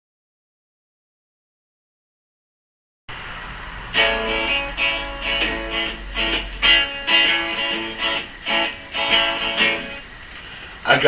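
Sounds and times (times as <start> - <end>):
guitar strumming chords: 3.2 - 10.7.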